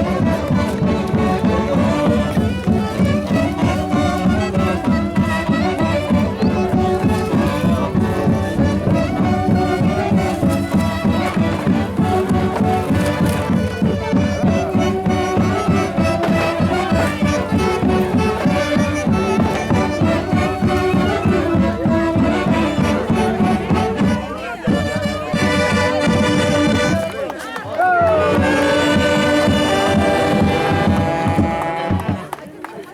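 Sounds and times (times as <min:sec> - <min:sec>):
band music with brass: 0:00.0 - 0:32.4.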